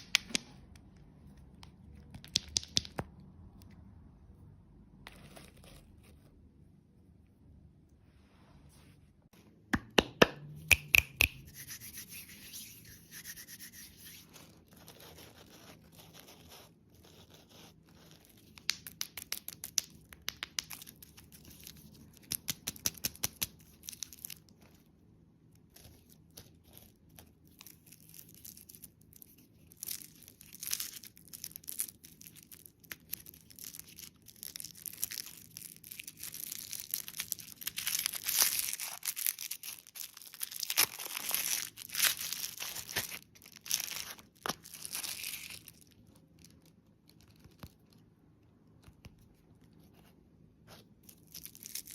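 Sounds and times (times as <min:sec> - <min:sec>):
candy clicking and tapping: 0:00.0 - 0:03.5, 0:09.7 - 0:11.5, 0:18.4 - 0:21.4, 0:22.1 - 0:24.4
packaging crinkling: 0:27.6 - 0:48.0.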